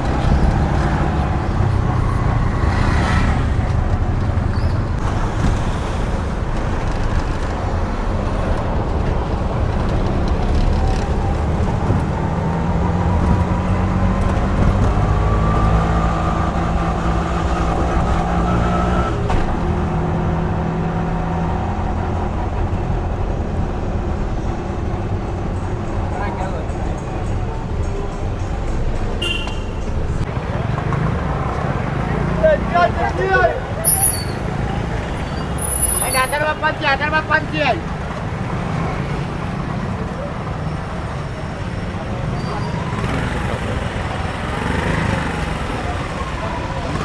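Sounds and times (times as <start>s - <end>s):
busy street traffic: 0.0s - 47.0s
vehicle engine speeding up: 9.6s - 19.2s.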